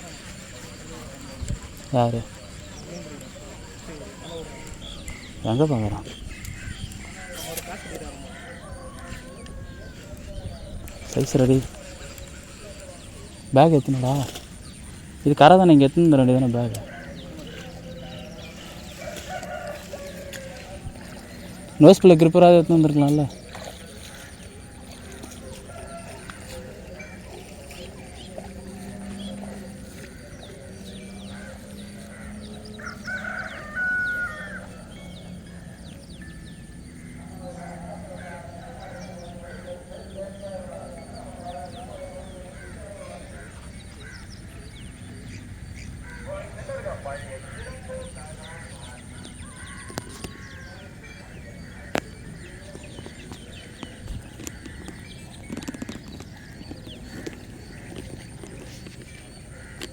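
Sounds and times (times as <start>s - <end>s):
small birds chirping: 0.0s - 59.9s
rooster crowing: 18.9s - 20.7s, 32.8s - 34.8s.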